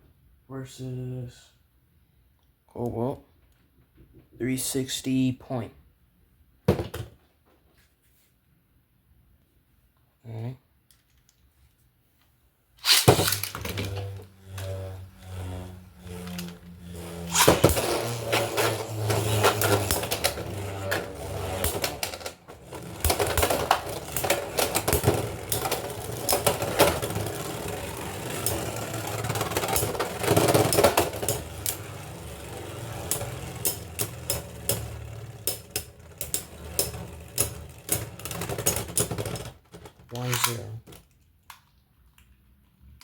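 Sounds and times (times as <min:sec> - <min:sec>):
spinning tops clashing: 0:12.8 - 0:39.5
spinning tops whirring hum: 0:12.8 - 0:39.7.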